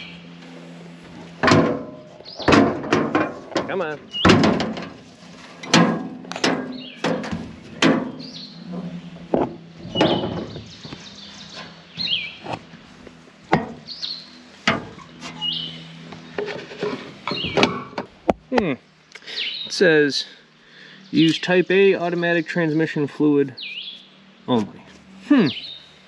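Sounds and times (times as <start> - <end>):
metal parts knocking and clanking: 1.4 - 5.0, 5.6 - 11.0
bird chirping: 2.2 - 2.7, 4.0 - 4.4, 6.6 - 12.6, 13.8 - 16.4, 17.3 - 17.8, 19.2 - 19.9, 20.7 - 22.9, 23.5 - 24.6.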